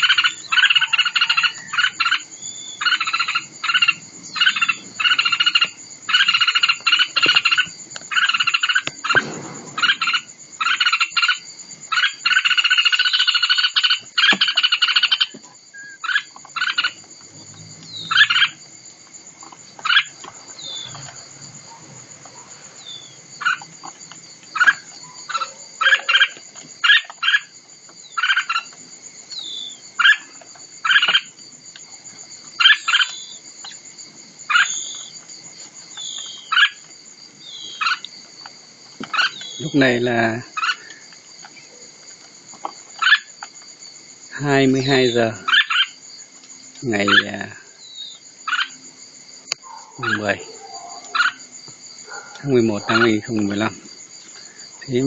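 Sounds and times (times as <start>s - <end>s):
nestling birds begging calls: 0.0s - 18.7s, 19.4s - 31.4s, 32.5s - 33.8s, 34.5s - 38.1s, 39.0s - 41.9s, 42.6s - 43.4s, 44.3s - 46.1s, 46.8s - 48.9s, 49.6s - 55.0s.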